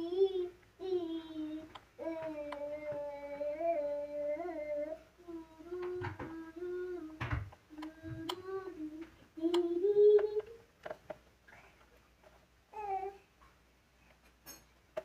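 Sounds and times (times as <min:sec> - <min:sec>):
person humming: 0:00.0 - 0:10.6
sharp clicks: 0:07.5 - 0:08.5.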